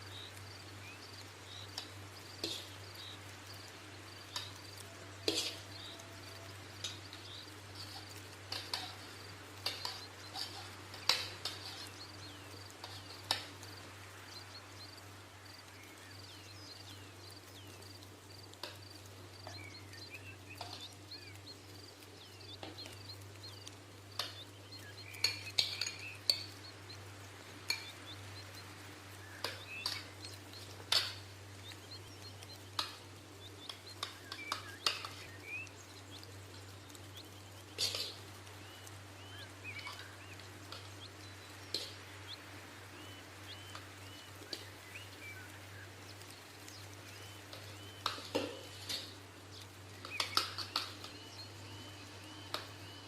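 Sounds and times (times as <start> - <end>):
small birds chirping: 0.0 - 53.0
metal utensils clinking on cookware: 4.4 - 7.0, 7.8 - 12.0.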